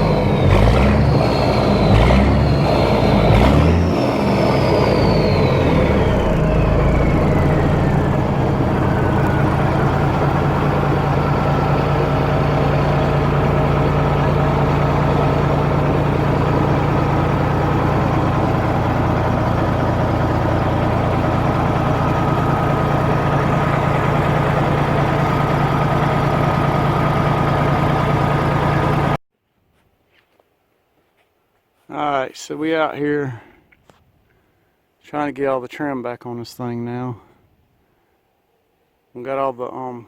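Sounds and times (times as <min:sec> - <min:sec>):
diesel truck engine idling: 0:00.0 - 0:29.2.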